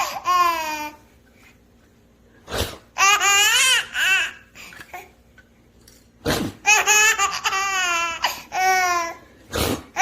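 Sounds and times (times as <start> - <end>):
baby laughing in squeals: 6.6 - 9.2.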